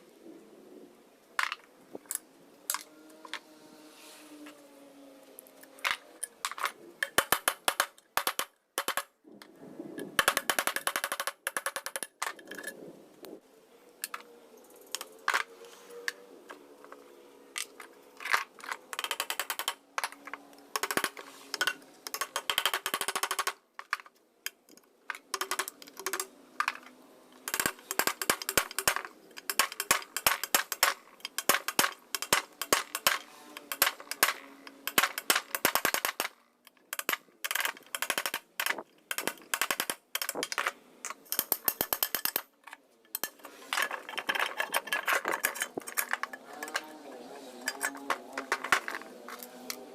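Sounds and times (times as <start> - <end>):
sewing machine parts clicking: 17.6 - 49.8.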